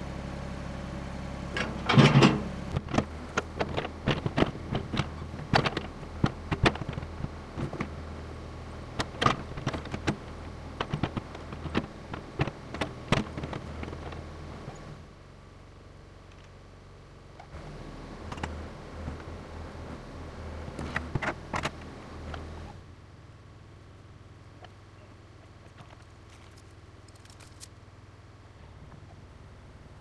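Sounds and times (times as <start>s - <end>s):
backhoe engine idling: 0.0s - 26.9s
sharp knocks and clicks: 10.8s - 13.9s.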